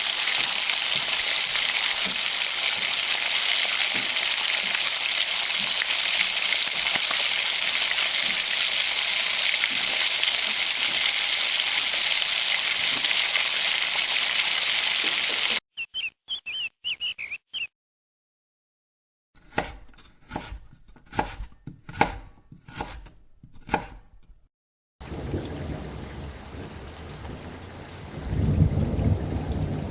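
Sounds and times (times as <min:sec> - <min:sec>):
food sizzling in hot oil: 0:00.0 - 0:15.6
high chirps: 0:15.8 - 0:17.7
knife chopping on a board: 0:19.4 - 0:24.3.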